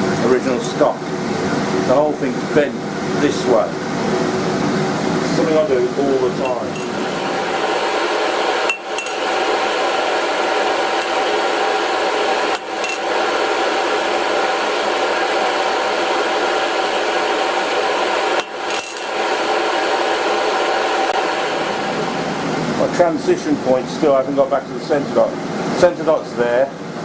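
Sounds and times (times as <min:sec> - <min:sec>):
forge rushing noise: 0:06.1 - 0:23.5.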